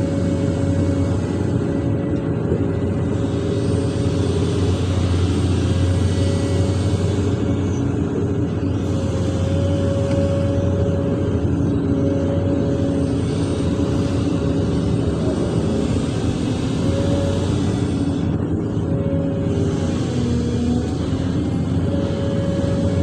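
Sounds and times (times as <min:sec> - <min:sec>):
excavator diesel engine running: 0:00.0 - 0:23.0
high machine whine: 0:00.0 - 0:23.0.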